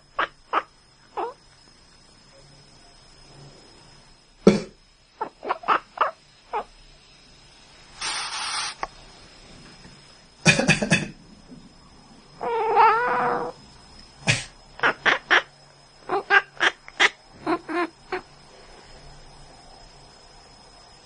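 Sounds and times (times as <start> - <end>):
breathy hissing burst: 7.9 - 8.9
person coughing: 10.5 - 11.1
cat meowing: 12.4 - 13.5.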